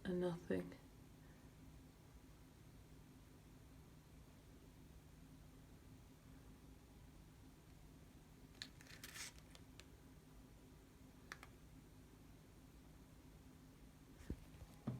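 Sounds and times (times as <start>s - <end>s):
faint room hum: 0.0s - 14.9s
faint clicks: 11.3s - 11.6s.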